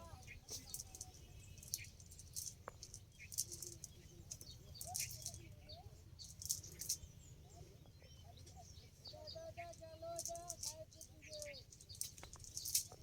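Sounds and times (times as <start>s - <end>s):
small birds chirping: 0.0s - 13.0s.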